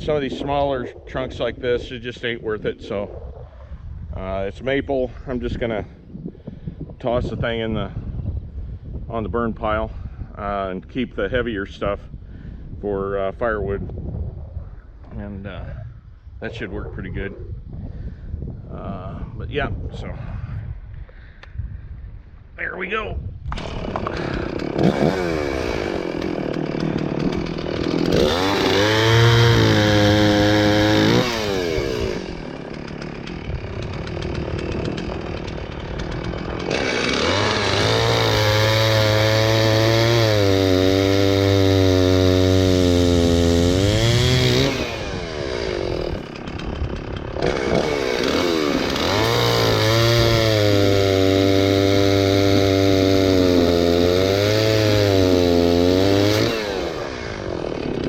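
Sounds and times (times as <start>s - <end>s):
chainsaw cutting log: 23.5s - 58.0s.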